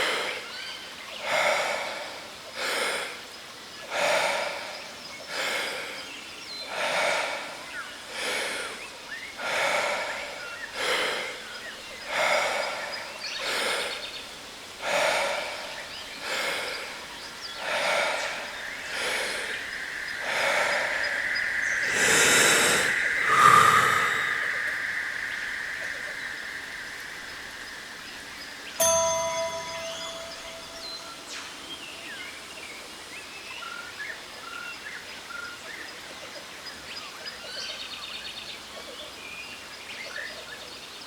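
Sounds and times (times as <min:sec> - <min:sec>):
waterfall hiss: 0:01.2 - 0:28.7
deep rhythmic breathing: 0:03.8 - 0:25.1, 0:29.1 - 0:31.6
steady ringing tone: 0:28.8 - 0:31.7.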